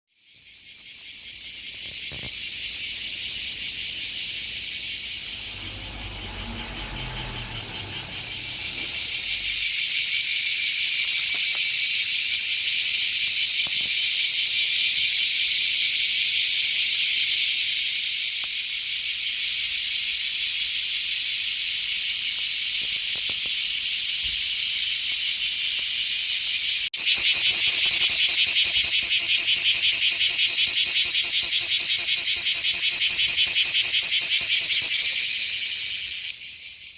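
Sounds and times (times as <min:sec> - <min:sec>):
cicadas buzzing: 0:00.2 - 0:36.9
low rumble: 0:05.2 - 0:09.6.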